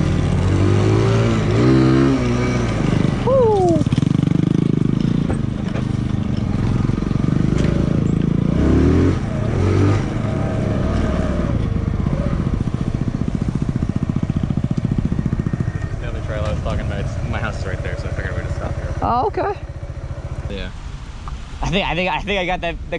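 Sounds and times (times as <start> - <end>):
motorcycle engine idling: 3.0 - 8.5, 11.5 - 20.6.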